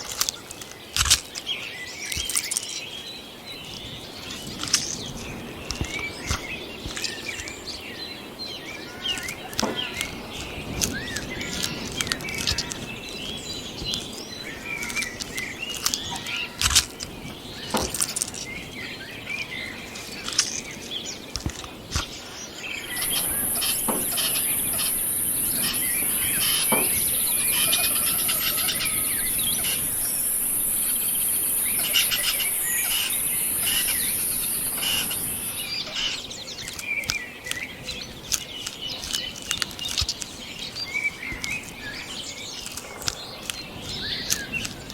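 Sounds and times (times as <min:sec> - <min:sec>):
clicks and rustles: 0:00.0 - 0:02.8, 0:03.7 - 0:07.8, 0:09.0 - 0:18.7, 0:19.9 - 0:44.9
birds chirping: 0:00.0 - 0:44.9
insect high-pitched buzz: 0:22.8 - 0:36.1.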